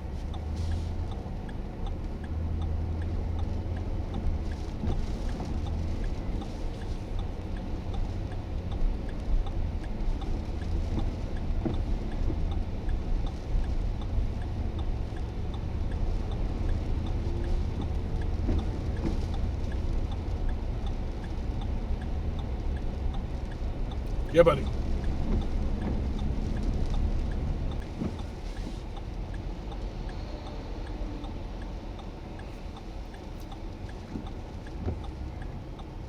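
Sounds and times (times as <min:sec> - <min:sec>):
faint regular ticking: 0:00.0 - 0:36.0
heavy rain: 0:09.2 - 0:21.6, 0:22.6 - 0:29.3.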